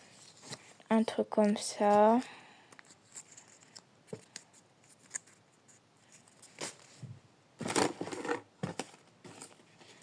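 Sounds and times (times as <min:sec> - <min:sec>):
rustling of craft objects: 0:00.0 - 0:10.0.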